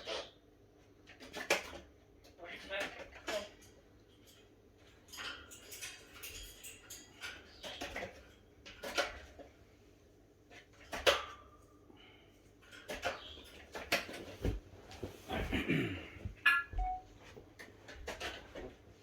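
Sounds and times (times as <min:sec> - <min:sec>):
clinks and taps: 0:16.4 - 0:17.0.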